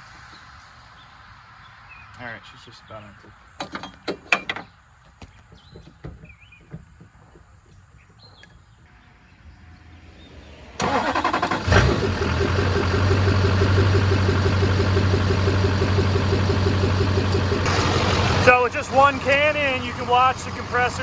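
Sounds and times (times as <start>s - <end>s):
diesel engine idling: 8.9s - 21.0s
diesel engine starter cranking: 9.4s - 21.0s.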